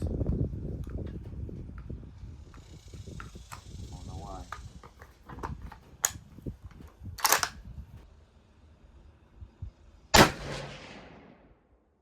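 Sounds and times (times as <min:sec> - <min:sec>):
rifle shot: 0:10.1 - 0:11.7.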